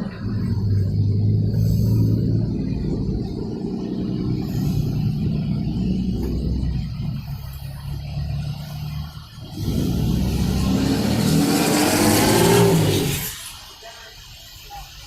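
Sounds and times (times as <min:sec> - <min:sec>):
vehicle engine accelerating: 0:00.0 - 0:13.6.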